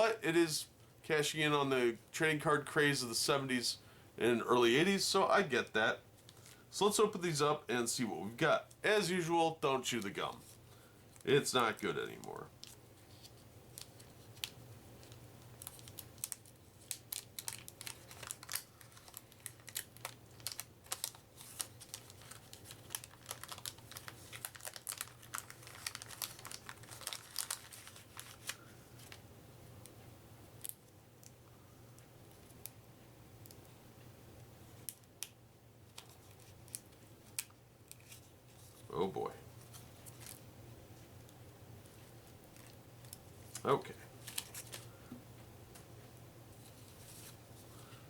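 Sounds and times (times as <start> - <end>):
wax paper wrappers crackling: 5.0 - 29.3, 34.8 - 45.1.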